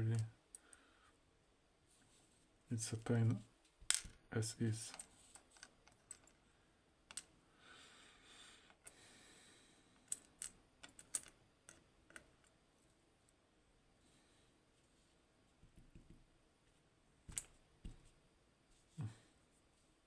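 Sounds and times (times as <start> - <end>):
metal clicks of lock parts: 4.9 - 6.4, 7.1 - 7.3, 10.0 - 12.6.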